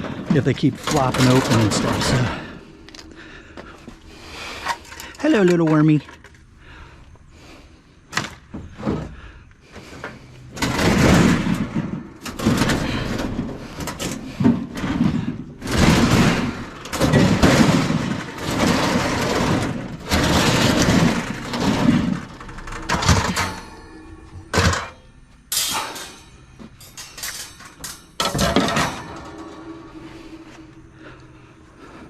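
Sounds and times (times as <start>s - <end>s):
scrap scraping and rattling: 9.8s - 32.0s.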